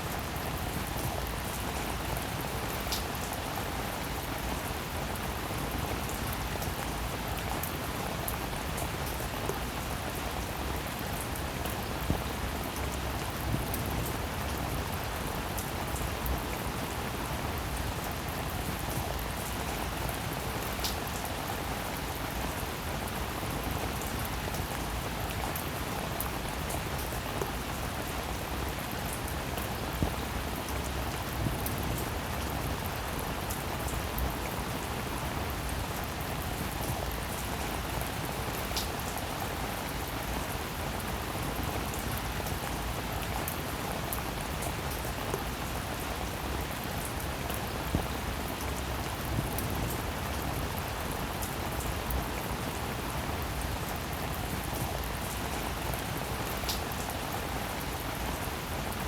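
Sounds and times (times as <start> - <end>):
steady rain hiss: 0.0 - 59.0.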